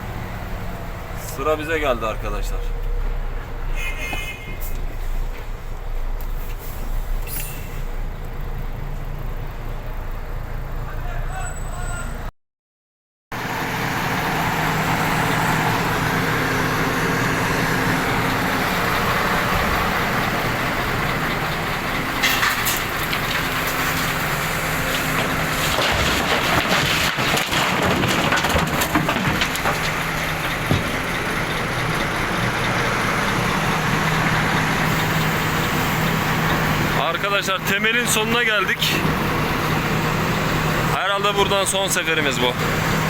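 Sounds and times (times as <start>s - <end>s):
truck diesel engine running: 13.4s - 43.0s
soil and stones tipping into truck: 22.0s - 31.4s
clattering and knocks: 22.2s - 31.3s.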